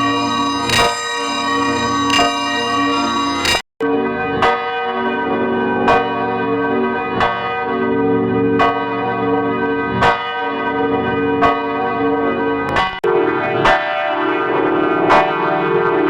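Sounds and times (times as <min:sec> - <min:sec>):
church bells ringing: 0:00.0 - 0:07.8.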